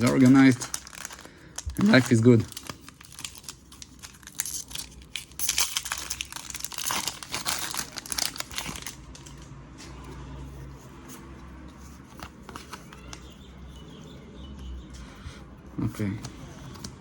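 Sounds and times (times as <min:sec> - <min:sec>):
foil wrapper tearing and crinkling: 0:00.0 - 0:09.4.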